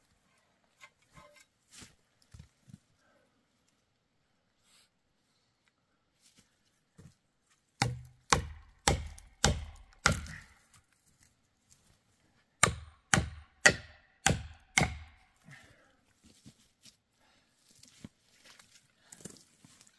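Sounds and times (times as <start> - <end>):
axe striking wood: 7.8 - 10.6, 12.6 - 15.3.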